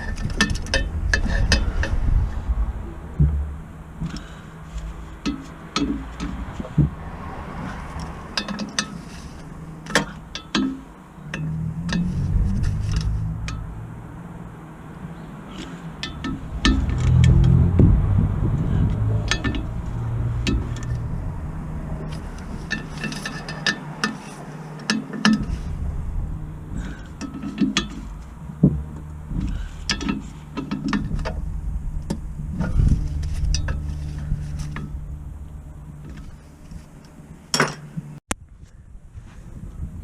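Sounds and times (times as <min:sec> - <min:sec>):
steady low hum: 0:00.0 - 0:07.1, 0:25.2 - 0:40.0
metal tools clinking: 0:22.1 - 0:25.7.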